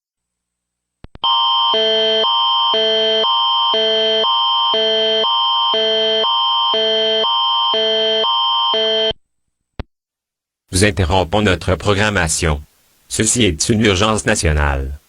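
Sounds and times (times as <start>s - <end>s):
steady high tone: 1.2s - 9.1s
alternating electronic alert chords: 1.8s - 8.9s.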